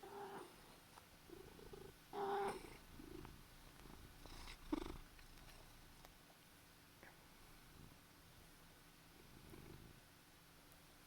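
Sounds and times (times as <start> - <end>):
cat murmuring: 0.0 - 0.6, 1.3 - 3.2
cat purring: 0.0 - 6.0, 9.2 - 10.0.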